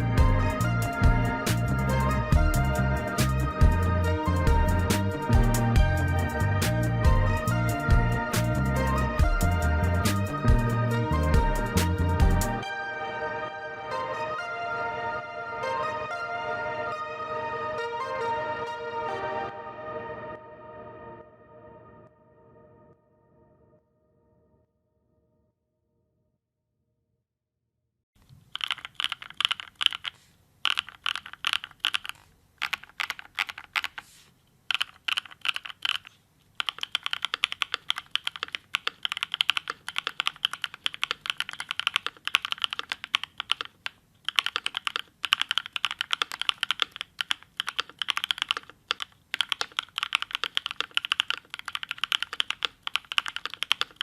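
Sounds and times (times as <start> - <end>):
fast mechanical keyboard typing: 28.4 - 34.1, 34.7 - 54.0.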